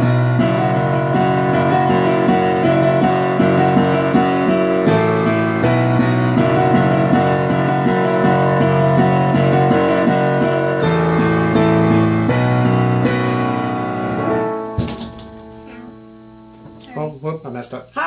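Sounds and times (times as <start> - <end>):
keyboard playing piano chords: 0.0 - 17.7
person speaking: 16.7 - 18.0.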